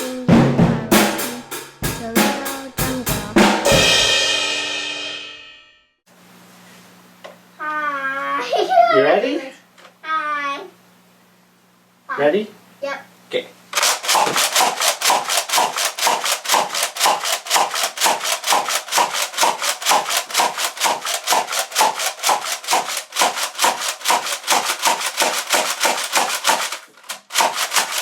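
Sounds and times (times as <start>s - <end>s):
rhythmic scraping or shaking: 0.0s - 4.1s, 13.8s - 28.0s.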